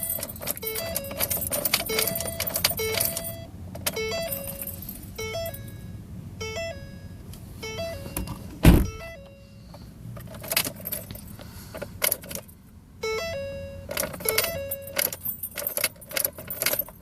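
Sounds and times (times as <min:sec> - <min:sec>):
keys jangling: 0:00.0 - 0:05.7, 0:10.2 - 0:12.6, 0:13.9 - 0:17.0
car two-note warning chime: 0:00.0 - 0:09.8, 0:13.0 - 0:15.9.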